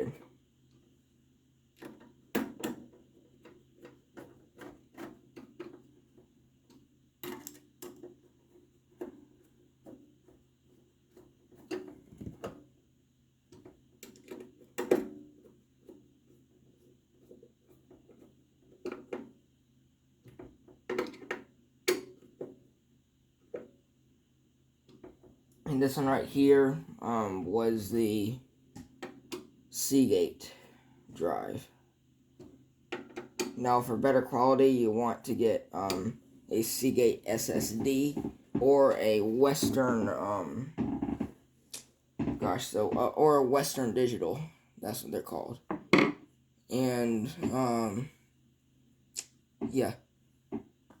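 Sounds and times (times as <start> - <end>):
computer hardware clicks and knocks: 6.7 - 8.3.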